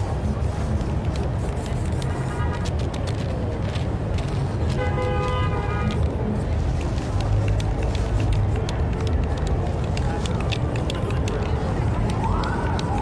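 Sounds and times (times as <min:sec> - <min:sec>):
spray-paint can hissing: 0:00.0 - 0:02.9
low rumble of street traffic: 0:00.0 - 0:13.0.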